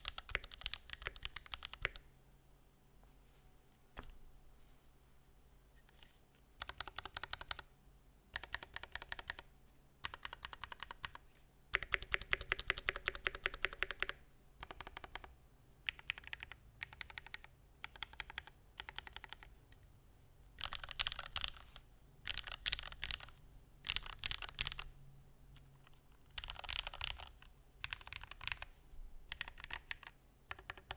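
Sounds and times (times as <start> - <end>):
mechanical keyboard typing: 0.0 - 2.0, 6.6 - 7.7, 8.4 - 11.2, 11.8 - 15.3, 15.9 - 19.5, 20.6 - 24.9, 25.8 - 28.7, 29.3 - 30.9.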